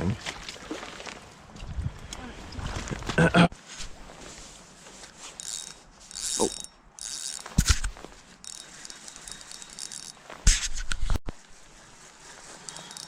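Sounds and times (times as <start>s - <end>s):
rod and reel bumping and rattling: 4.8s - 11.2s, 12.1s - 13.0s
fishing reel drag hissing: 5.3s - 11.0s, 12.1s - 13.0s.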